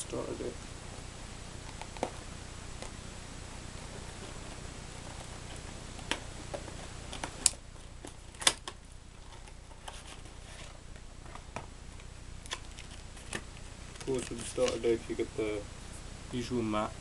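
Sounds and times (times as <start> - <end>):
steady low hum: 0.0 - 17.0
cardboard and plastic crinkling: 3.9 - 11.6, 12.4 - 15.2.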